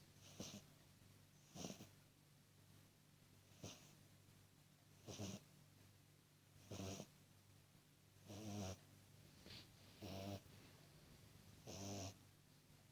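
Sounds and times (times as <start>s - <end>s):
low steady hum: 0.0s - 12.9s
puppy snoring: 0.2s - 0.7s, 1.4s - 2.0s, 3.5s - 4.0s, 5.0s - 5.5s, 6.6s - 7.2s, 8.2s - 8.9s, 9.9s - 10.5s, 11.6s - 12.2s.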